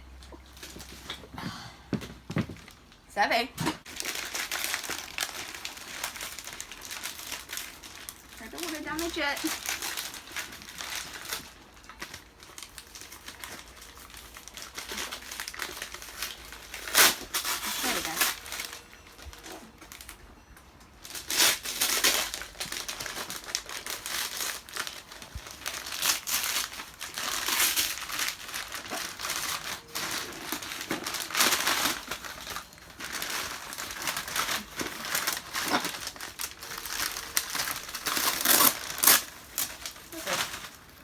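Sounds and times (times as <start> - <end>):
packing material crumpling: 3.8 - 20.2, 20.8 - 41.0.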